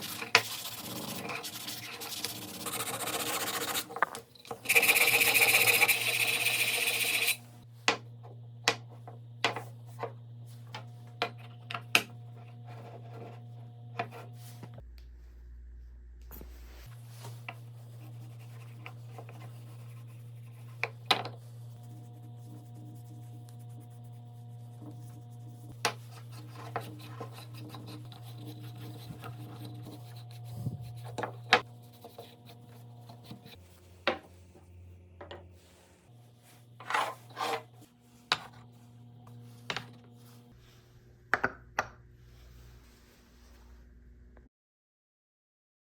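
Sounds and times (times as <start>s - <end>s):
low hum: 12.1s - 41.1s
wood rubbing and scraping: 36.8s - 37.8s.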